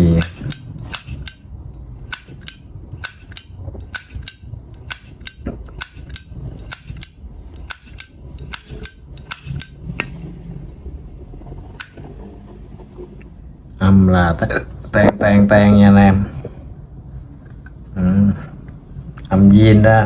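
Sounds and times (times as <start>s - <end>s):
lighter lid clinking: 0.2s - 10.1s, 11.8s - 12.0s.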